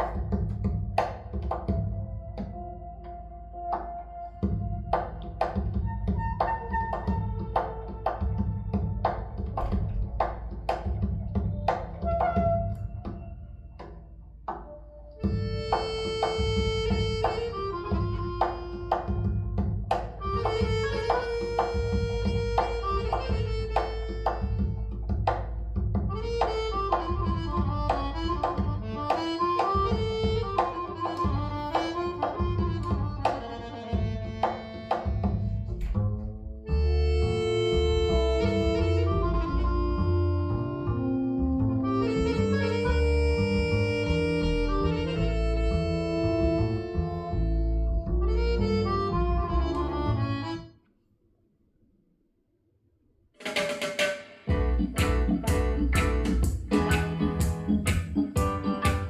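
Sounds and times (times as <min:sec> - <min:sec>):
drum strikes: 0:00.0 - 0:02.0, 0:53.4 - 0:59.0
heavy bass: 0:00.0 - 0:50.7, 0:54.5 - 0:59.0
melody of held notes: 0:54.5 - 0:59.0
steady low drone: 0:54.5 - 0:59.0.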